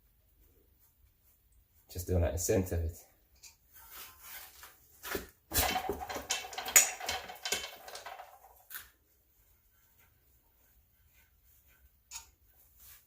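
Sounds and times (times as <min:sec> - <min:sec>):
objects being handled: 0:03.3 - 0:13.0.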